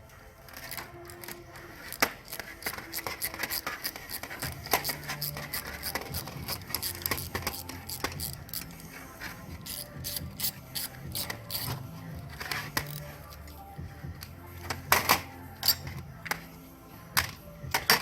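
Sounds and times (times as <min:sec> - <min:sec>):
wrench and ratchet on metal: 0:00.5 - 0:08.8, 0:09.5 - 0:13.1, 0:14.1 - 0:16.4.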